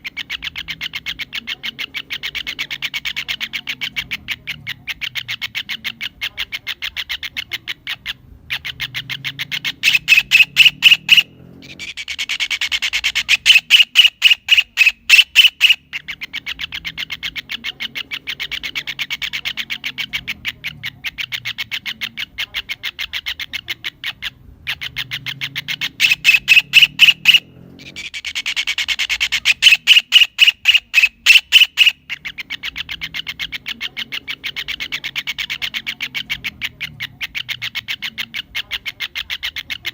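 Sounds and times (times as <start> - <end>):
kingfisher calling: 0.0 - 39.9.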